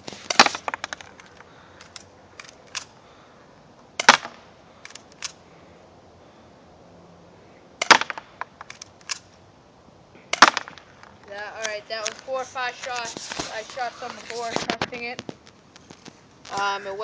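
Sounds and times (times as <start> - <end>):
airsoft pistol shots: 0.3 - 1.0, 4.0 - 4.5, 7.8 - 9.2, 10.3 - 10.9.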